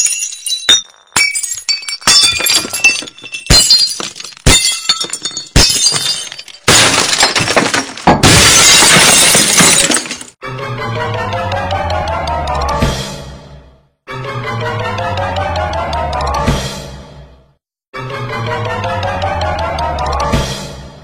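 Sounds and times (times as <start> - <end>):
music: 10.4 - 21.0.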